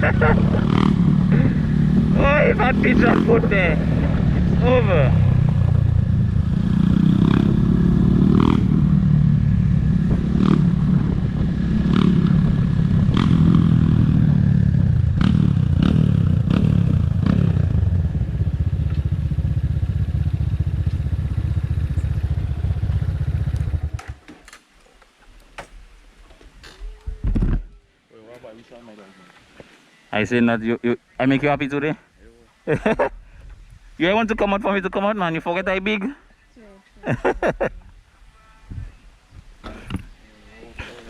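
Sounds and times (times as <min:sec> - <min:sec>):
motorcycle engine running: 0:00.0 - 0:24.2.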